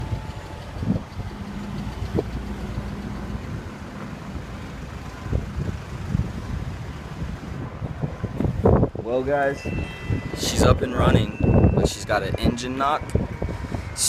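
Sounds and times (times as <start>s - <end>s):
engine knocks: 0.0s - 6.4s
car engine idling: 0.0s - 8.9s.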